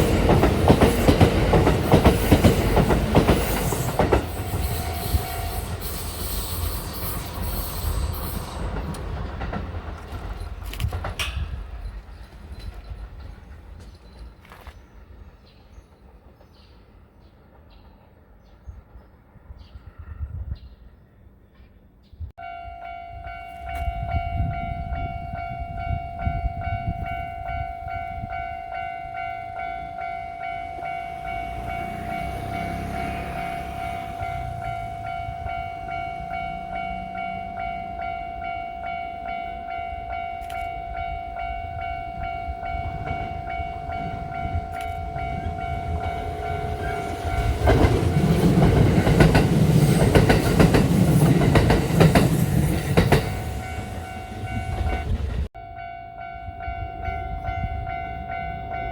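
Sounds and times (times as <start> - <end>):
wheels clattering on rails: 0.0 - 19.1, 43.0 - 55.5
electric train passing: 0.0 - 20.1, 22.4 - 58.9
level crossing warning bell: 22.4 - 58.9.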